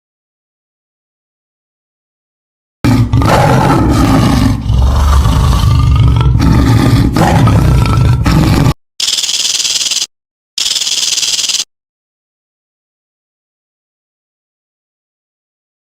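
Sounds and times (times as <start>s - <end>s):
large animal roaring: 2.8s - 8.8s.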